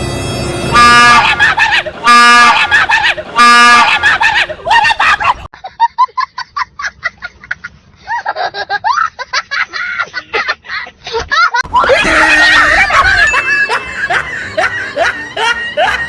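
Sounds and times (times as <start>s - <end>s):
train horn blaring: 0.0s - 4.1s
shrieks and squealing laughter: 1.1s - 16.0s.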